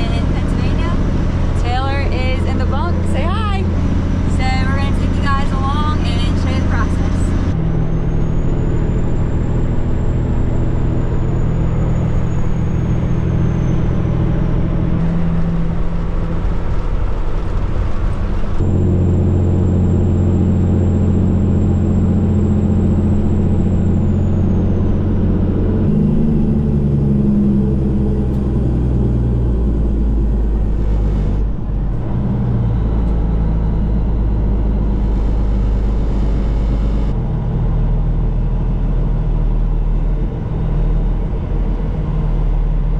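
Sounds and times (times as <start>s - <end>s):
vehicle engine running under load: 0.0s - 42.9s.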